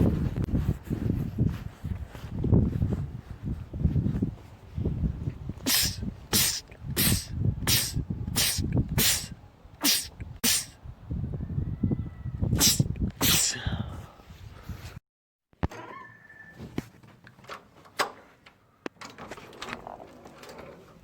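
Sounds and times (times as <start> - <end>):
man sneezing: 5.7 - 10.8, 12.6 - 13.8.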